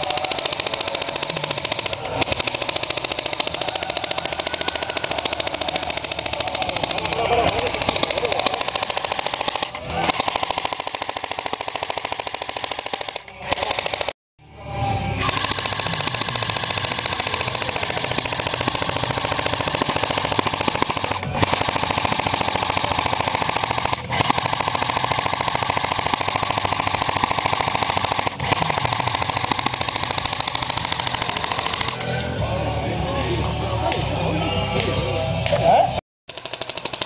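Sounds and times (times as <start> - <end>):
airsoft gun firing full-auto: 0.0 - 14.2, 15.2 - 32.2, 36.3 - 37.0.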